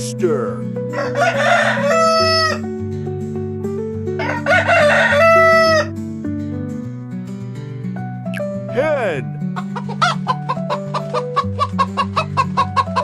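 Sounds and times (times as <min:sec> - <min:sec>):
background music: 0:00.0 - 0:13.0
rooster crowing: 0:00.9 - 0:02.6, 0:04.2 - 0:05.9.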